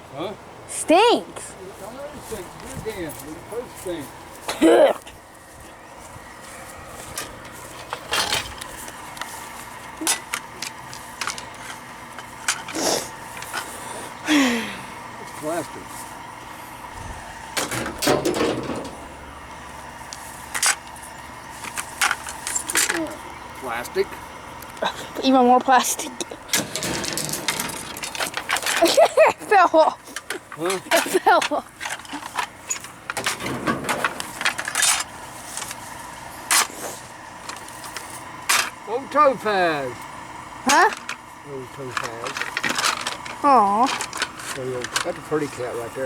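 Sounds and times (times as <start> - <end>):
junk clattering: 7.0 - 13.8, 17.5 - 19.6, 20.5 - 23.8, 25.7 - 36.7, 40.6 - 46.0
sharp clunk: 17.6 - 19.1
sharp knocks and rattles: 17.6 - 19.2, 26.5 - 29.1, 30.2 - 35.8.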